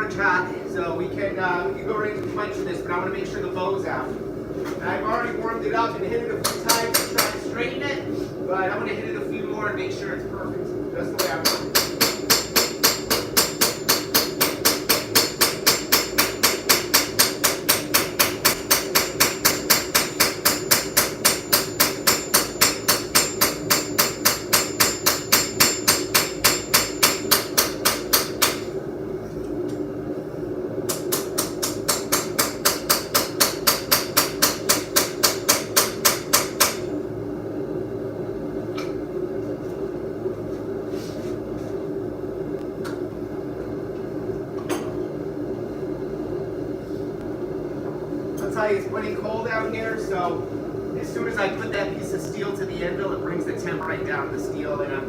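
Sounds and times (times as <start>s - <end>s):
steady low hum: 0.0s - 55.0s
hammer striking metal on anvil: 6.4s - 7.4s, 11.2s - 28.7s, 30.9s - 36.9s.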